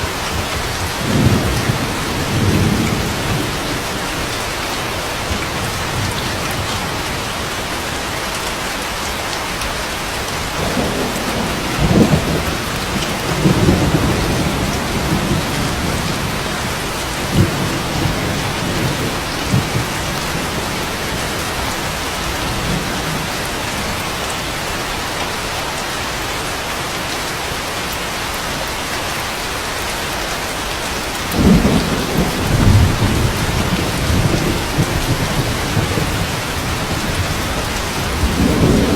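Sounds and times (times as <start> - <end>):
steady rain: 0.0 - 38.9
low rolls of thunder: 0.1 - 4.3, 10.6 - 24.0, 31.3 - 38.9.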